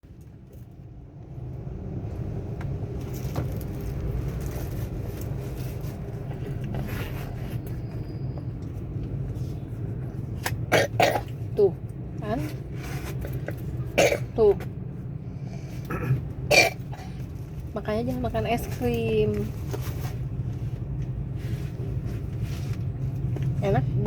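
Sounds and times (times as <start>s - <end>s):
child coughing: 10.7s - 11.3s, 14.0s - 14.4s, 15.9s - 17.2s.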